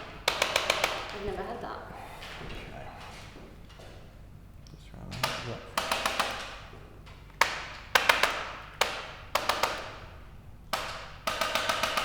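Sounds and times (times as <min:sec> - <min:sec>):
hands tapping on back: 0:00.0 - 0:01.6, 0:05.1 - 0:10.0.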